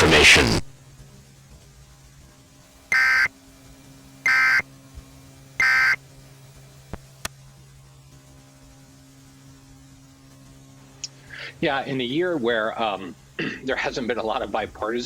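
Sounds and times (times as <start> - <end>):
faint steady hum: 0.0 - 15.0
buzzing data tone bursts: 2.9 - 3.3, 4.2 - 4.6, 5.6 - 6.0.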